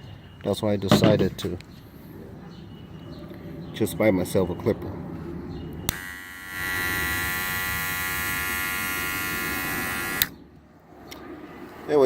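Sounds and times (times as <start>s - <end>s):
hair clipper buzzing: 5.9s - 10.3s.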